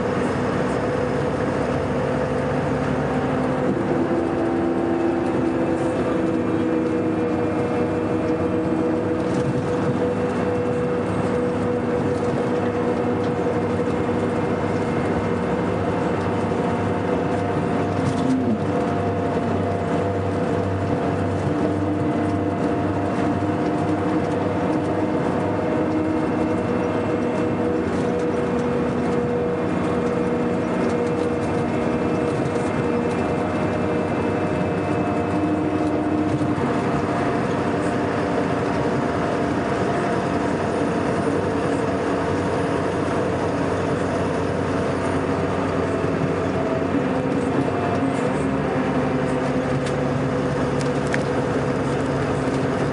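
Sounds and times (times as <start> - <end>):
diesel engine droning: 0.0 - 52.9.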